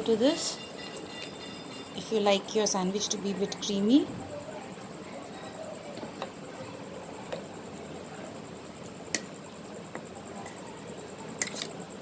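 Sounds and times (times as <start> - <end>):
thin high whine: 0.0 - 12.0.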